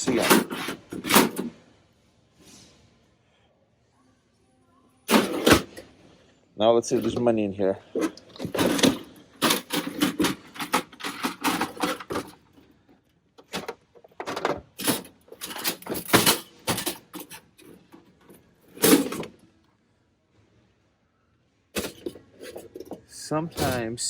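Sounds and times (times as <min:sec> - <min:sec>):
cash register drawer rattling: 0:00.0 - 0:01.6, 0:05.1 - 0:05.8, 0:06.9 - 0:12.7, 0:13.4 - 0:19.4, 0:21.8 - 0:24.0.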